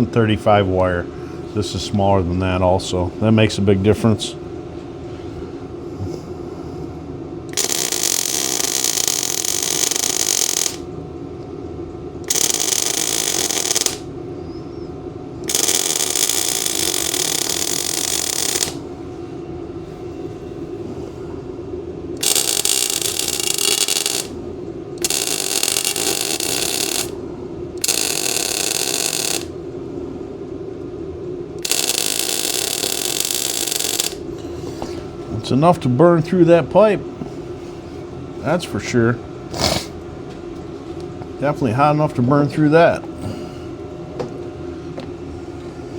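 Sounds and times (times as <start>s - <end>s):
welder machine hum: 0.0s - 40.0s
welding arc crackling: 7.5s - 10.9s, 12.3s - 14.1s, 15.4s - 18.8s, 22.2s - 24.4s, 25.0s - 27.2s, 27.8s - 29.5s, 31.6s - 34.2s.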